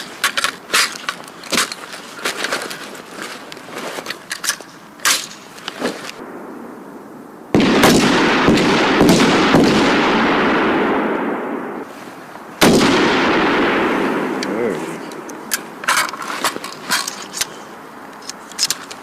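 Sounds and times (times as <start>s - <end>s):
gunshots: 7.6s - 11.8s, 12.6s - 15.0s.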